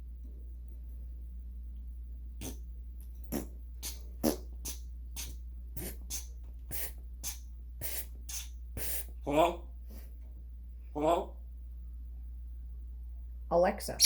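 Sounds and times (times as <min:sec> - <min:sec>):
steady low hum: 0:00.0 - 0:14.0
parrot popping mouth noises: 0:03.3 - 0:08.9.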